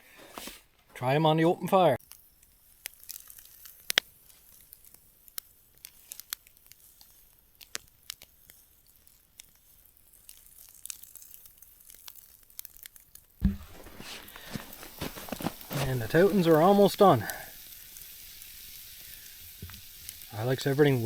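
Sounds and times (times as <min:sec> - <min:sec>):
wood fire crackling: 0:01.8 - 0:21.0
dough sizzling in oil: 0:01.9 - 0:21.0
thump: 0:13.4 - 0:14.2.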